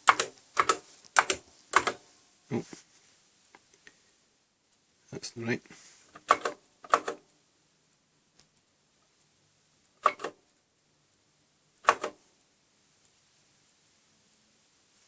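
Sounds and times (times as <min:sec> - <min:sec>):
keyboard keystrokes clicking: 0:00.0 - 0:02.0.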